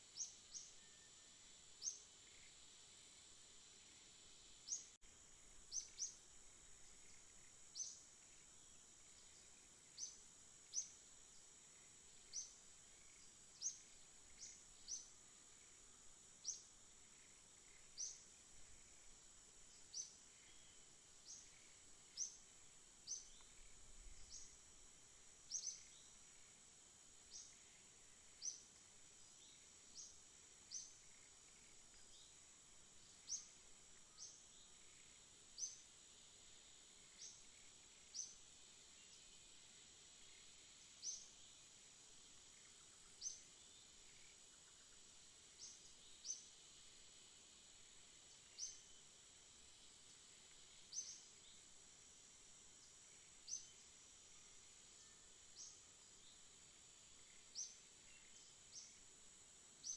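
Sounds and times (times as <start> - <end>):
bird chirping: 5.6 - 6.2.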